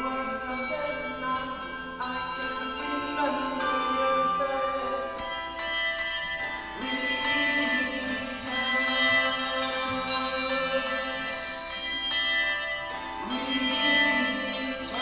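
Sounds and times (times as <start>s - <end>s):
handbells playing a melody: 0.0s - 15.0s.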